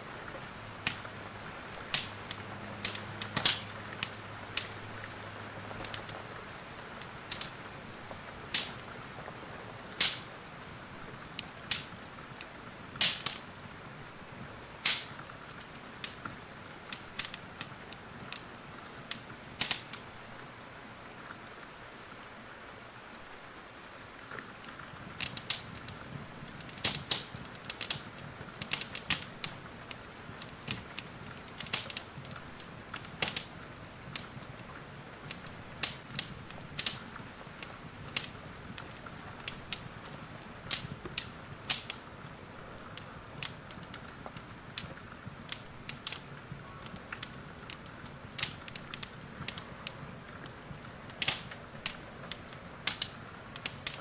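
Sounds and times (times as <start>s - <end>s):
rain hissing: 0.0s - 54.0s
wood fire crackling and popping: 0.2s - 20.3s, 24.3s - 54.0s.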